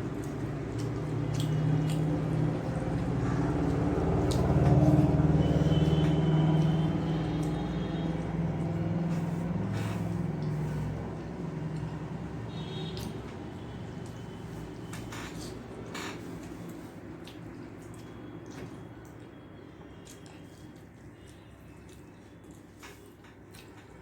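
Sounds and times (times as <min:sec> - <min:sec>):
vehicle engine passing: 0:00.4 - 0:14.8.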